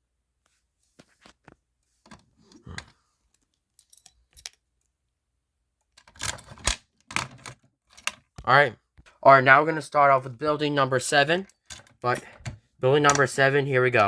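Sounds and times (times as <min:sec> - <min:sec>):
handling clicks and rattles: 0:06.0 - 0:09.1, 0:11.3 - 0:13.4.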